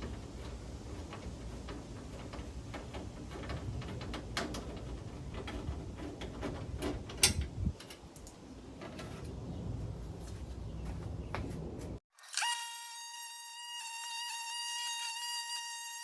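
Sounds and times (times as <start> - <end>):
hand tools clicking and clinking: 2.1 - 9.1.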